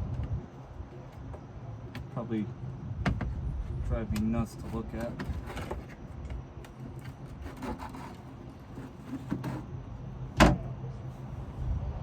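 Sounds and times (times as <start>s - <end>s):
steady low hum: 0.0s - 12.0s
handling sounds on boat deck: 4.0s - 9.7s, 10.4s - 10.7s.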